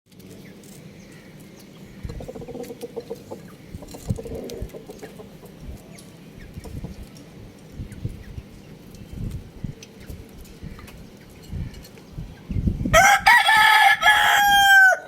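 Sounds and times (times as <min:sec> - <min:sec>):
chicken clucking: 0:02.0 - 0:07.0.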